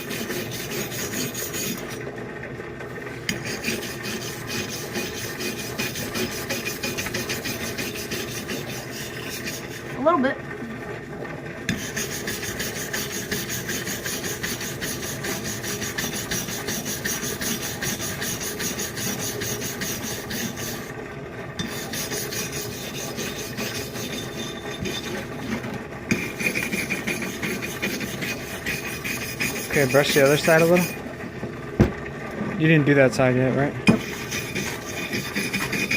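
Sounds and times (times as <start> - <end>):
wire brush scraping metal: 3.3 - 9.8, 21.6 - 31.0, 33.9 - 35.9.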